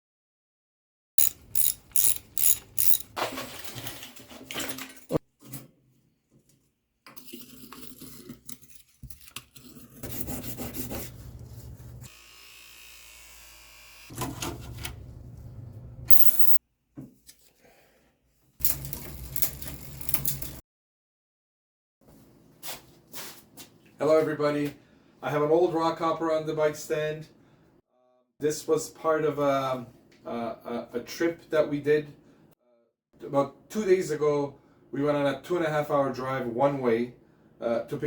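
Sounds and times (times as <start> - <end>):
bicycle ratchet clicking: 1.2 - 3.1.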